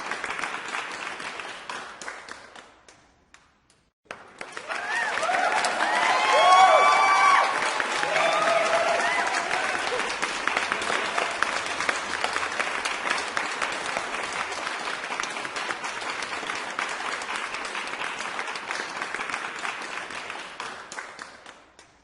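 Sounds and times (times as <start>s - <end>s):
crowd applauding: 0.0s - 2.4s, 4.1s - 21.6s
crowd shouting: 5.0s - 10.0s.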